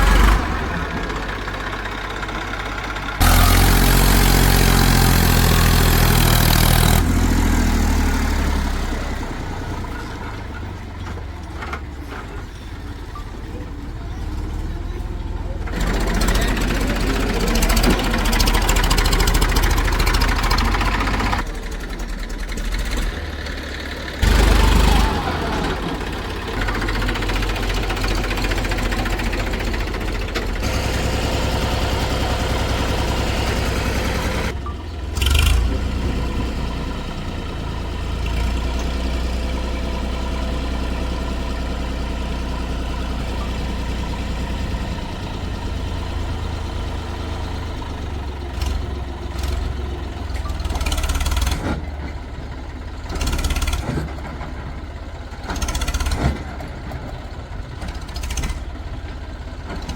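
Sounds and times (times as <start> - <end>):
diesel engine rumbling: 0.0 - 59.9.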